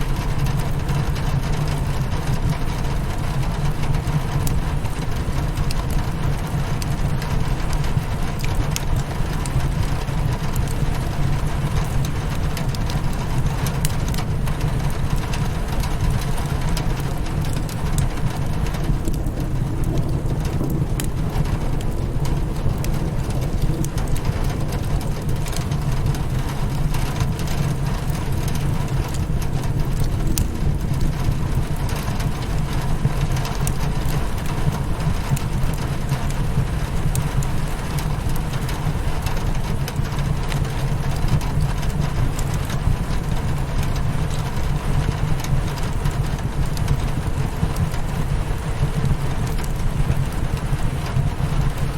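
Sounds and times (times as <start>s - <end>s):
fire crackling: 0.0s - 51.9s
rain pattering on window: 0.0s - 51.9s
low rumble: 16.7s - 35.7s.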